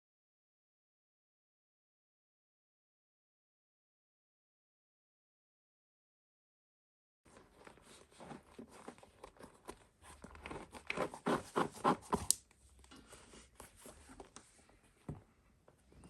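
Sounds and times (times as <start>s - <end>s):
leather lace scraping through holes: 7.8s - 12.4s.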